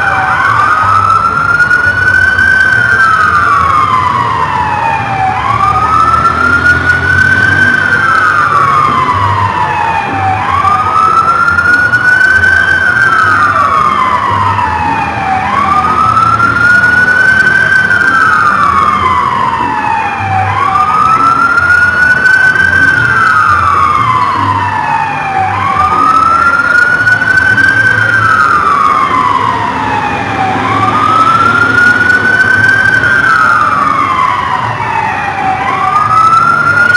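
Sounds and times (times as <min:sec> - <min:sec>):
police siren wailing: 0:00.0 - 0:36.9.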